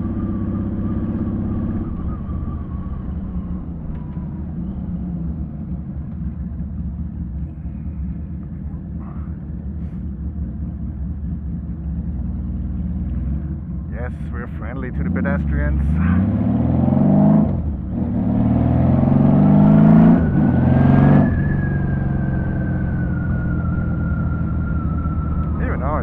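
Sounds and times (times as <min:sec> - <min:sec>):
motorcycle engine running: 0:00.0 - 0:15.0.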